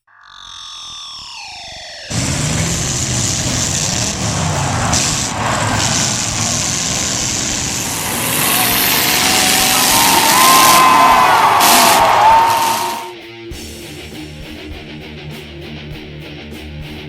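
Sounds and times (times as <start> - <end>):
car engines revving loudly: 2.1 - 13.1.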